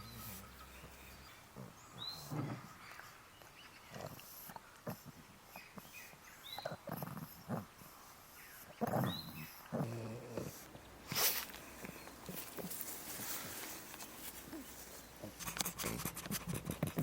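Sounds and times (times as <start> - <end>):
dog making low vocal sounds: 8.7 - 10.7.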